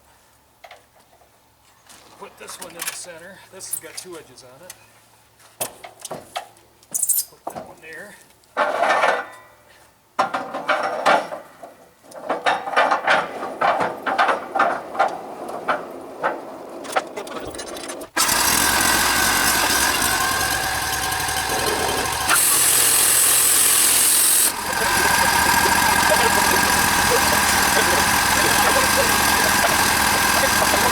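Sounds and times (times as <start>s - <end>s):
band sawmill running: 18.1s - 30.9s.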